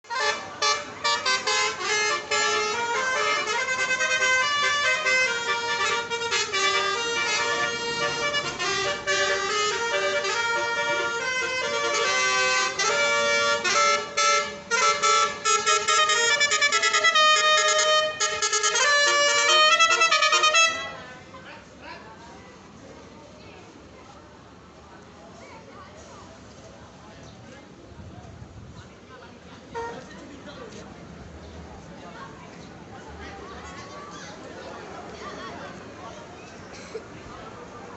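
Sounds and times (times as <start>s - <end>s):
multi-tone bus horn melody: 0.0s - 21.0s, 29.7s - 30.1s.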